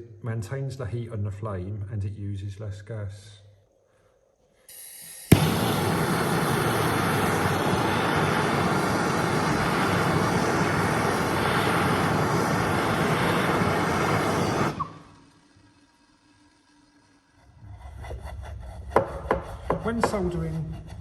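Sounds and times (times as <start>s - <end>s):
blowtorch flame roaring: 5.1s - 15.4s.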